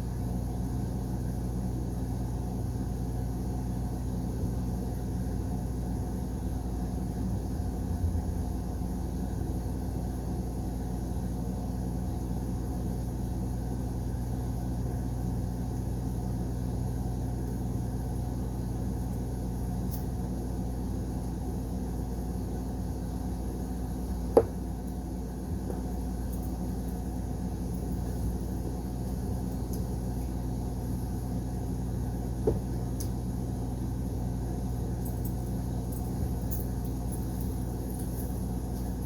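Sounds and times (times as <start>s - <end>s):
low rumbling hum: 6.5s - 10.9s, 22.9s - 39.0s.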